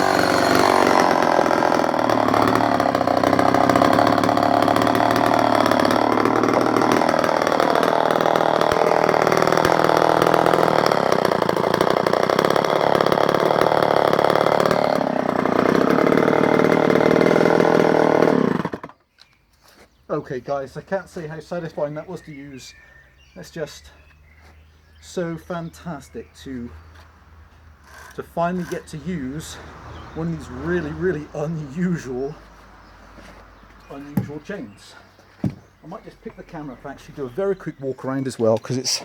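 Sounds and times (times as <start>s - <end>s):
chainsaw cutting wood: 0.0s - 19.4s, 27.8s - 32.4s, 33.1s - 37.3s.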